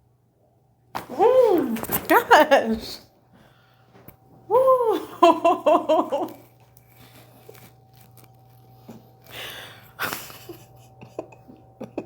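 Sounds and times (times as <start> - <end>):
person breathing out: 9.3 - 10.0.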